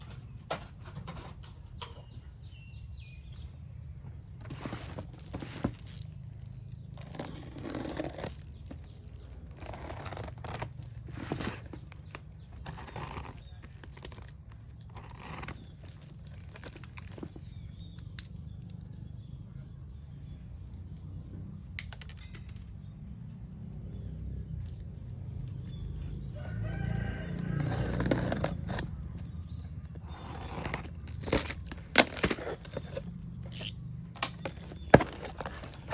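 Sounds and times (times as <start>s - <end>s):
packaging rustling: 29.9s - 35.9s.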